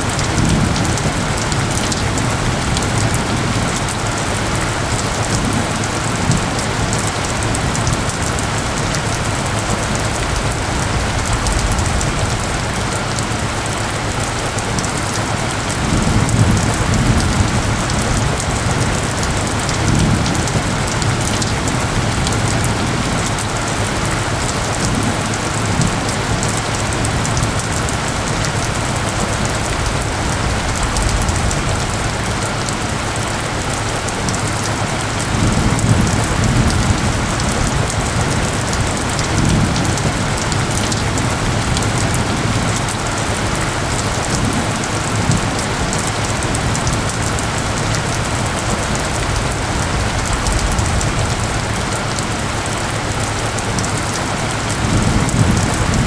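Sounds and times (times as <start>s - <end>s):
heavy rain falling: 0.0s - 56.0s
low rumbles: 27.4s - 34.1s.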